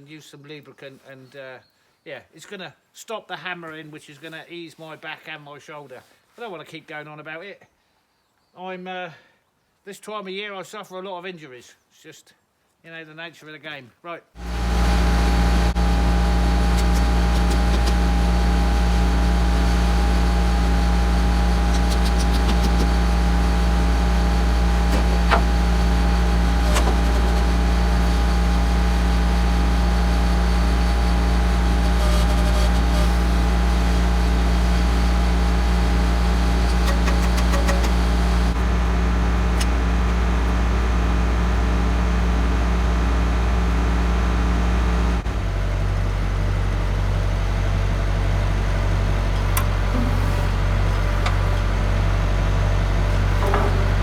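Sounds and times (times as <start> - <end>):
tractor engine idling: 14.4 - 54.0.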